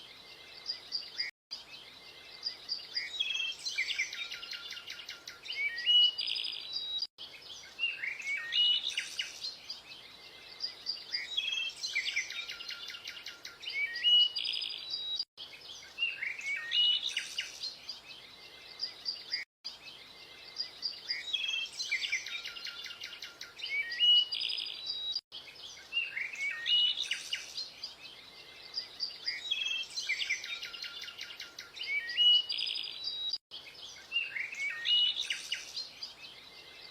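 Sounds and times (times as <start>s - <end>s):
birds chirping and trilling: 0.0s - 36.9s.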